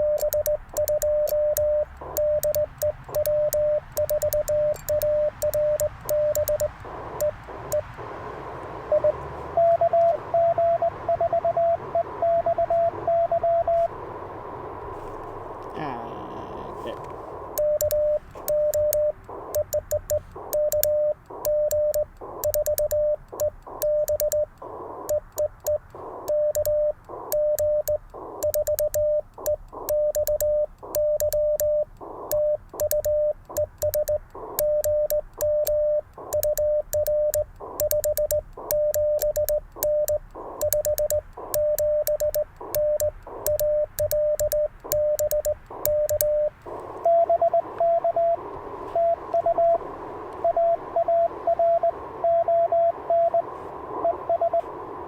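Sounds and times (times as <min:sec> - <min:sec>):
faint key clicks: 0:00.0 - 0:08.0, 0:17.0 - 0:47.1
morse code beeps: 0:00.0 - 0:08.0, 0:08.9 - 0:13.9, 0:17.4 - 0:49.8, 0:50.4 - 0:54.7.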